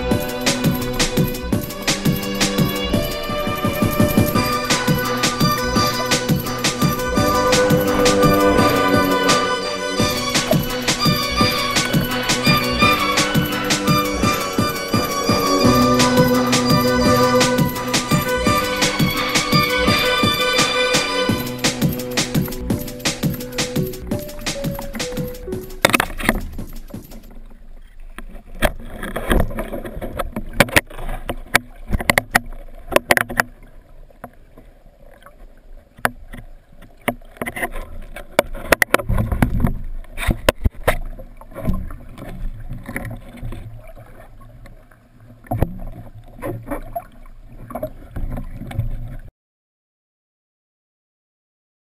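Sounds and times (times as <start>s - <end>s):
water sloshing and splashing: 0.0s - 49.3s
sharp clicks and knocks: 21.3s - 27.4s.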